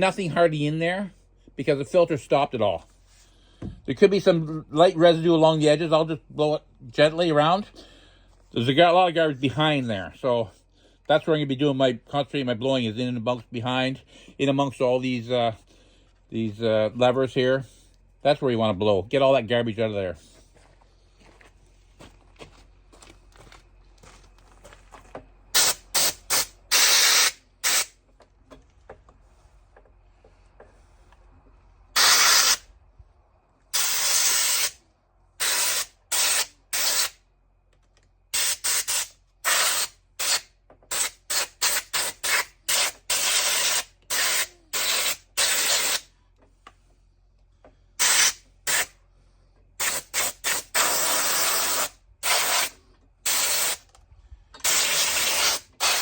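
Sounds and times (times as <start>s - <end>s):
compressed air blasts: 25.5s - 28.0s, 32.0s - 32.7s, 33.7s - 34.8s, 35.4s - 37.2s, 38.3s - 46.1s, 48.0s - 49.0s, 49.8s - 53.9s, 54.6s - 56.0s.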